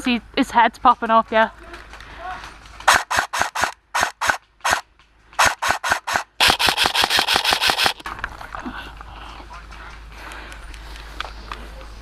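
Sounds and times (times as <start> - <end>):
airsoft rifle firing: 2.8 - 4.8, 5.4 - 8.1.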